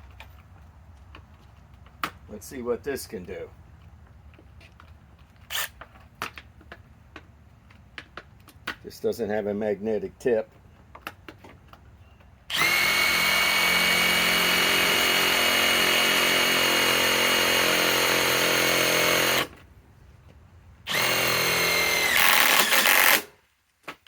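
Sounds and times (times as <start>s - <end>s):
impact driver motor whining: 12.5s - 19.6s, 20.9s - 23.3s.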